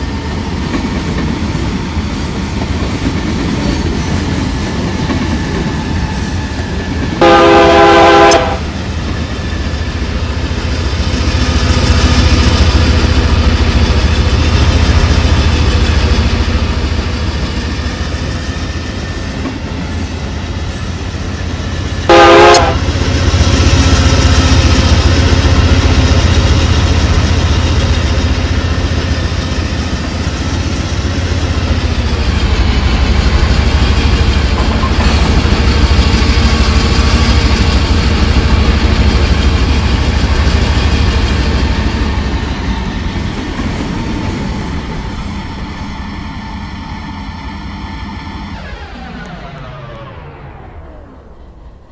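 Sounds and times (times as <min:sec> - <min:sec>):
train wheels rumbling on rail: 0:00.0 - 0:51.9
locomotive horn blast: 0:07.2 - 0:08.8, 0:22.0 - 0:23.1.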